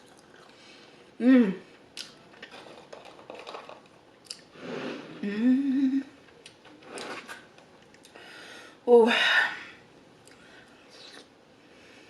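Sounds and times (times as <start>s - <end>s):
person humming mmm: 1.2s - 1.7s, 5.1s - 6.1s.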